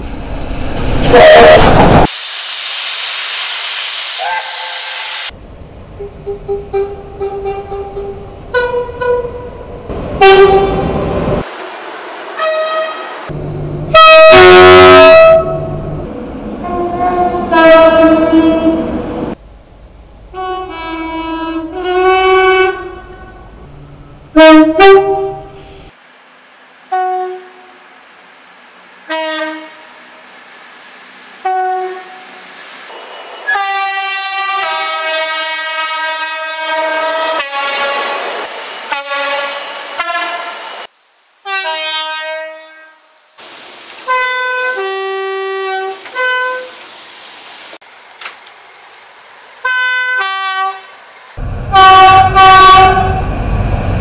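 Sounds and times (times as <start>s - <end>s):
train horn blasts: 1.1s - 1.9s, 6.2s - 9.6s, 10.2s - 11.0s, 12.4s - 13.2s, 13.9s - 15.8s, 16.6s - 19.0s, 20.3s - 23.5s, 24.3s - 25.7s, 26.9s - 27.8s, 29.0s - 29.9s, 31.4s - 32.2s, 33.5s - 40.6s, 41.4s - 43.3s, 44.0s - 46.8s, 49.6s - 51.0s, 51.7s - 53.2s.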